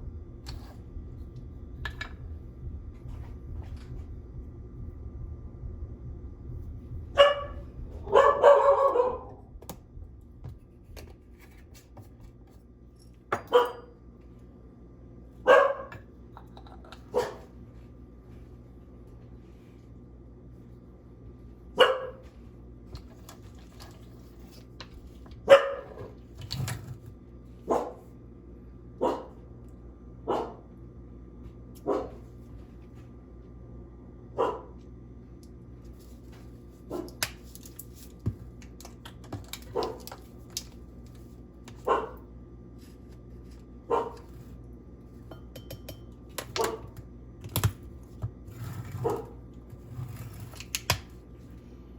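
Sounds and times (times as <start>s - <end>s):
dog barking: 7.2s - 9.4s, 13.5s - 13.9s, 15.4s - 15.9s, 17.1s - 17.5s, 21.8s - 22.2s, 25.5s - 26.0s, 27.7s - 28.0s, 29.0s - 29.4s, 30.3s - 30.6s, 31.8s - 32.2s, 34.4s - 34.8s, 41.8s - 42.2s, 43.9s - 44.2s.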